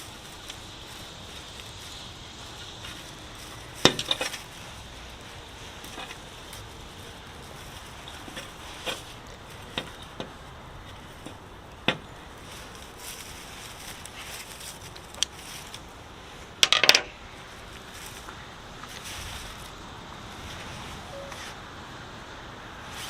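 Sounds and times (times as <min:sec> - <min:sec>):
steady background hiss: 0:00.0 - 0:23.0
hard objects clinking and knocking: 0:16.6 - 0:17.1.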